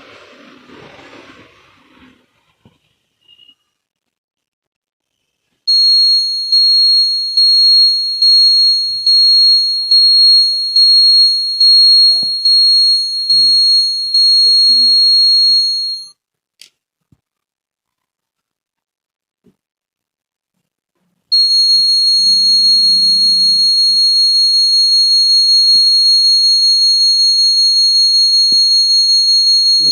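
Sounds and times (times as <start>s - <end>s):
shrill alarm buzzer: 5.7s - 16.1s, 21.3s - 29.9s.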